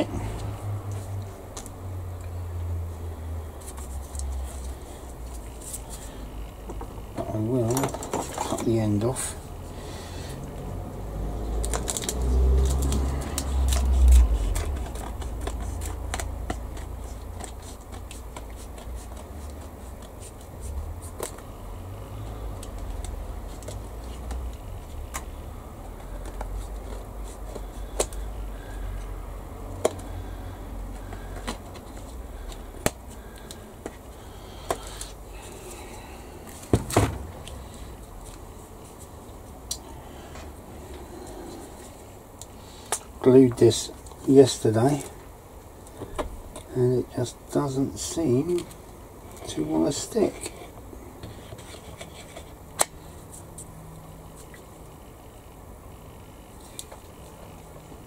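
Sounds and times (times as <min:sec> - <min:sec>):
handling noise: 0:03.6 - 0:09.4, 0:30.9 - 0:39.6.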